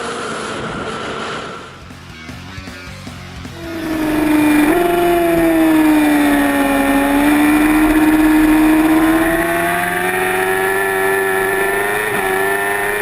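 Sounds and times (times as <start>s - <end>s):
motorcycle engine revving high: 3.5s - 13.0s.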